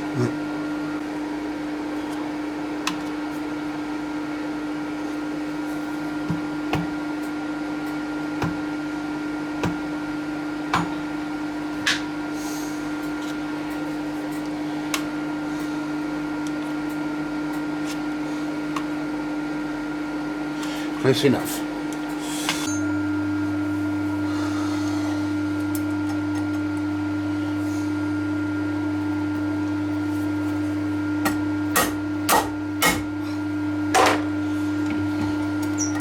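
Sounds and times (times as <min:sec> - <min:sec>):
milling machine humming: 0:00.0 - 0:36.0.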